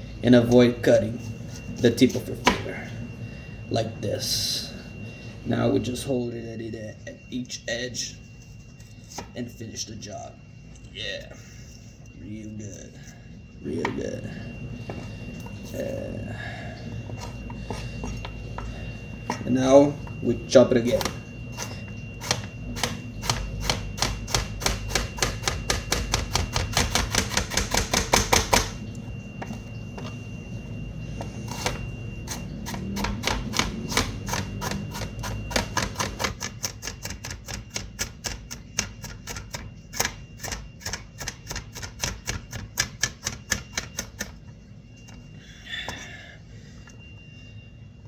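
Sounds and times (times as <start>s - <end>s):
knife chopping onion on board: 22.2s - 28.8s.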